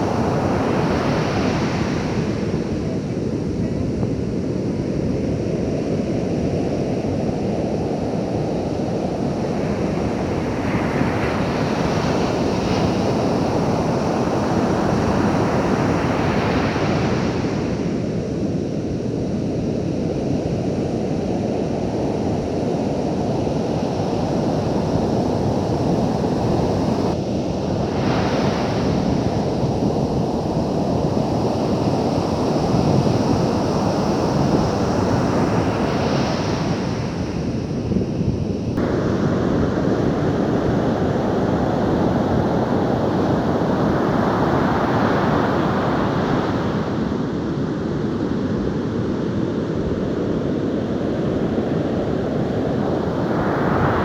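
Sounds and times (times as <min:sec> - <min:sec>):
wind on microphone: 0:00.0 - 0:54.0.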